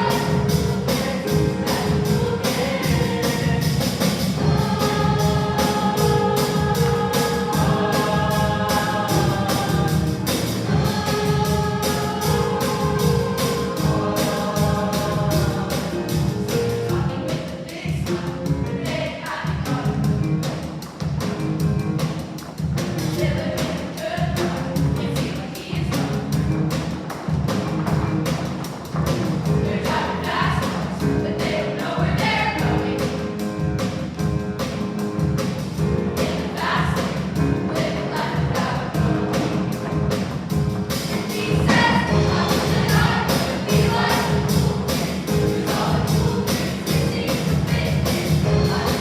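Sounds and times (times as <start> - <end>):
choir singing: 0.0 - 19.9, 29.6 - 33.2, 36.2 - 39.8, 41.0 - 49.0
instrumental accompaniment: 0.0 - 49.0
steady beat: 0.0 - 49.0.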